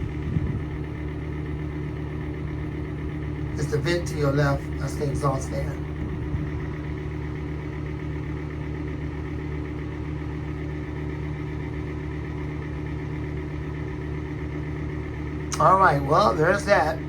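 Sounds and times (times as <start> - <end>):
exhaust fan humming: 0.0 - 17.0
high-pitched bearing drone: 3.4 - 6.3.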